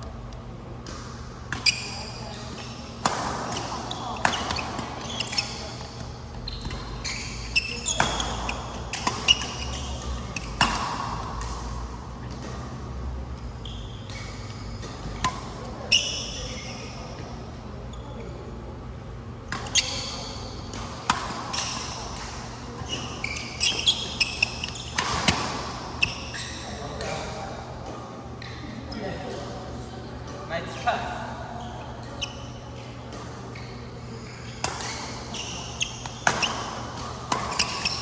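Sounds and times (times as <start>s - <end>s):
rackets hitting shuttlecock: 0.8s - 12.8s, 20.7s - 27.3s, 34.6s - 38.0s
shoes squeaking on court: 0.9s - 18.4s, 19.5s - 27.4s, 31.5s - 38.0s.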